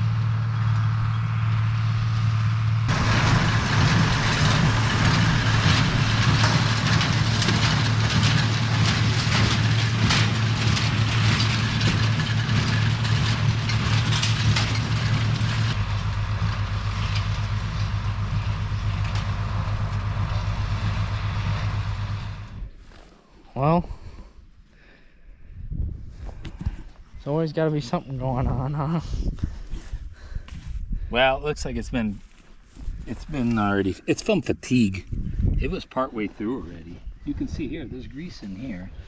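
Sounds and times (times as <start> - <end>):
tractor engine running: 0.0 - 22.7
deep low rumble: 0.0 - 23.2, 35.0 - 35.9
baler mechanical clatter: 0.4 - 22.6.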